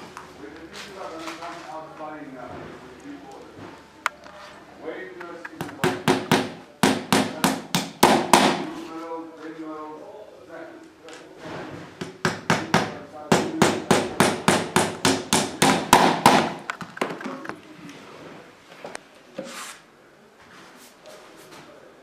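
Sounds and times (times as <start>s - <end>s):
hammer striking: 5.6s - 8.7s, 12.0s - 16.7s.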